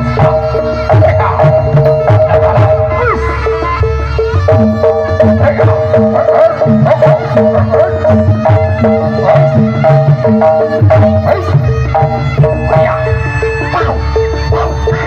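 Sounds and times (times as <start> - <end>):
traditional dance music: 0.0 - 15.0
hand drums fast rhythm: 4.4 - 13.1.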